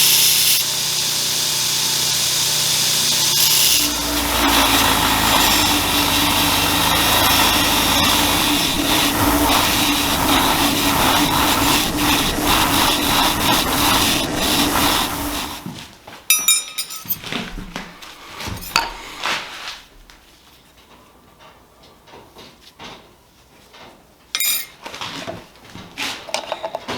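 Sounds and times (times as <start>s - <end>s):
electric power tool humming: 0.0s - 15.8s.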